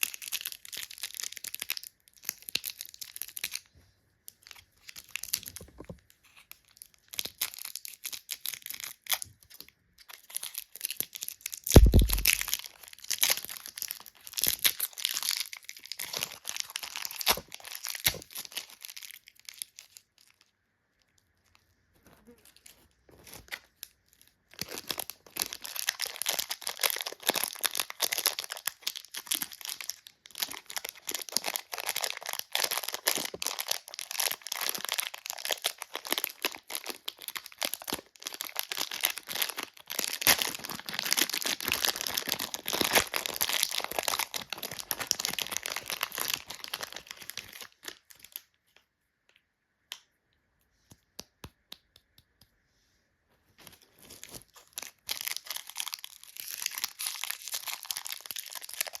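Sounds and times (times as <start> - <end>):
plastic wrappers crackling: 6.6 - 20.4, 24.5 - 48.4, 53.6 - 59.0.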